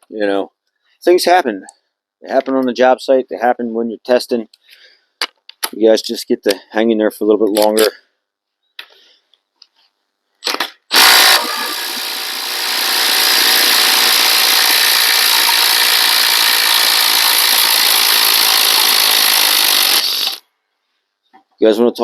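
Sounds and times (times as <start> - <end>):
cordless impact driver running: 10.9 - 20.4.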